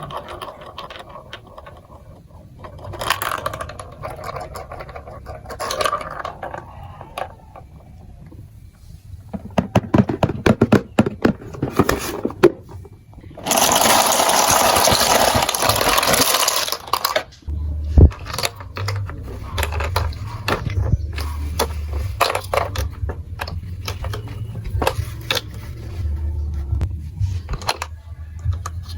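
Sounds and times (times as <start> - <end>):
plastic pieces clicking and clattering: 0.0 - 7.7, 13.4 - 26.0, 27.5 - 28.9
packaging rustling: 13.4 - 17.4.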